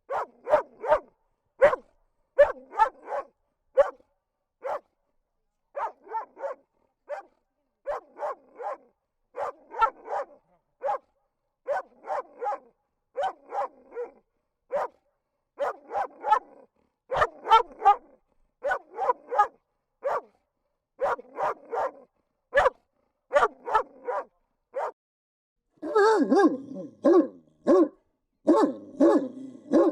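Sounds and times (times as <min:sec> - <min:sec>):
dog barking: 0:00.0 - 0:04.9, 0:05.7 - 0:15.0, 0:15.6 - 0:20.4, 0:21.0 - 0:25.0, 0:25.8 - 0:29.9.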